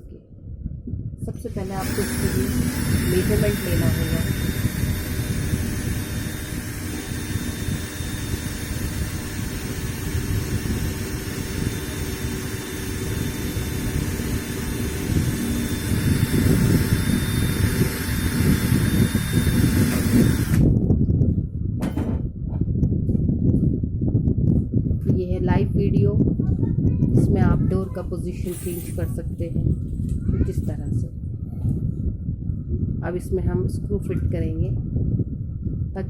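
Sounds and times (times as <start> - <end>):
loud rumbling noise: 0.0 - 22.6.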